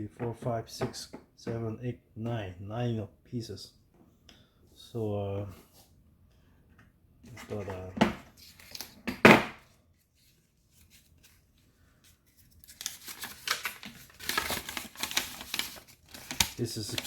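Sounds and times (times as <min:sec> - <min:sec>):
paper rustling and crinkling: 0:07.3 - 0:09.0, 0:09.6 - 0:17.0.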